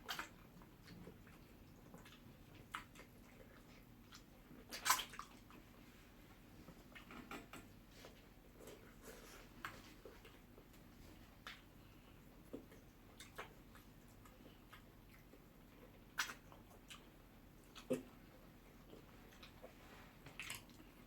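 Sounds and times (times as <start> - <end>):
wet lip smacks and slurps: 0.0 - 5.7, 12.5 - 18.2, 18.8 - 20.9.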